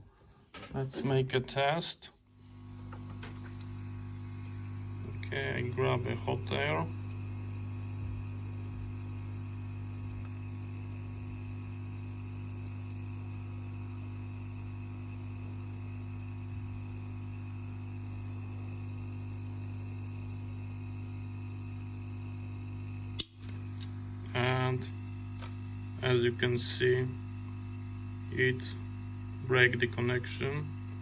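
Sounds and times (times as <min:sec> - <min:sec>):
steady low hum: 0:02.5 - 0:31.0
circuit breaker snapping: 0:23.2 - 0:23.9.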